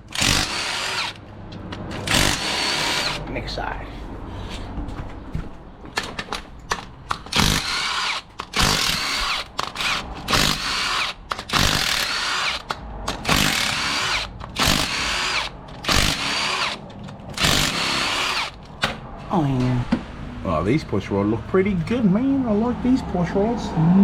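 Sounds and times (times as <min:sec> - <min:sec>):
power drill motor whine: 0:00.1 - 0:01.2, 0:02.1 - 0:03.2, 0:07.3 - 0:12.6, 0:13.3 - 0:16.8, 0:17.4 - 0:18.6.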